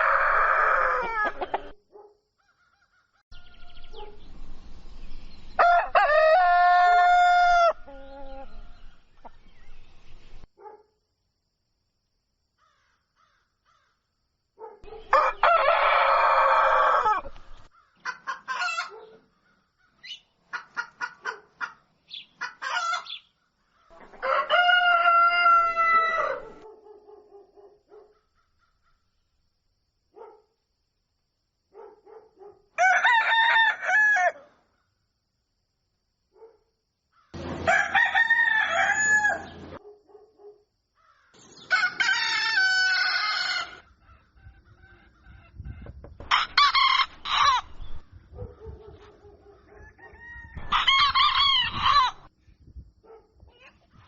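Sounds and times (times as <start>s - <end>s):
rooster crowing: 0.0s - 1.7s, 5.6s - 8.6s, 15.0s - 17.4s, 24.1s - 26.6s, 32.8s - 34.5s, 37.4s - 39.8s, 41.6s - 43.9s, 49.6s - 52.3s.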